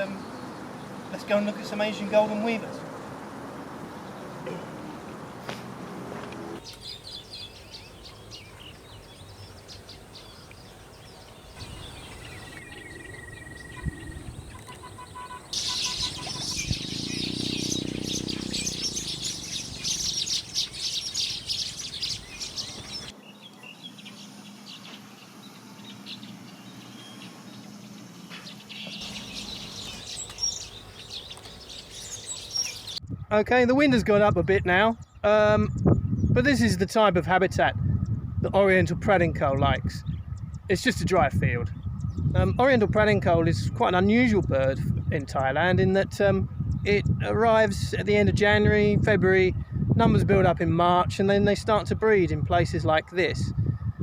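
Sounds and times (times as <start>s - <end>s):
weaver birds chattering: 6.6s - 25.0s, 25.8s - 33.0s.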